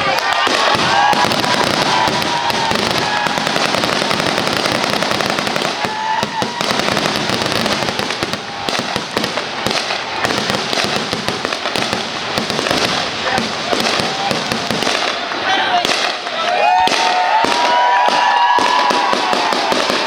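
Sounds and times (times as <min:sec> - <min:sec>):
pyrotechnics crackling and popping: 0:00.0 - 0:20.0.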